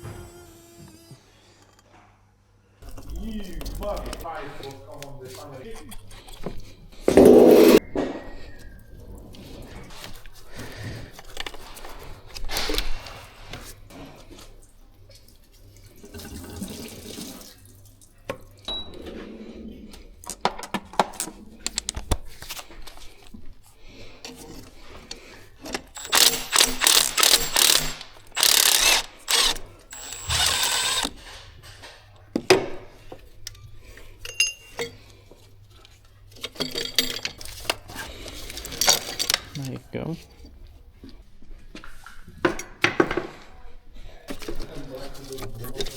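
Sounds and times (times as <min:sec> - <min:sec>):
power tool bursts: 0:00.0 - 0:01.4, 0:25.9 - 0:31.2
tools and metal parts clinking: 0:20.2 - 0:22.6, 0:25.7 - 0:31.1, 0:34.2 - 0:35.0, 0:36.3 - 0:39.8.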